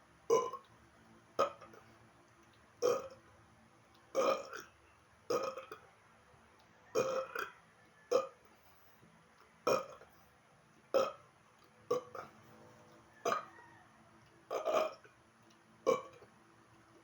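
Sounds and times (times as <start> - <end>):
man burping: 0.3 - 0.6, 2.8 - 3.2, 4.2 - 4.7, 5.3 - 5.8, 7.0 - 7.5, 9.7 - 10.1, 10.9 - 11.2, 15.9 - 16.2.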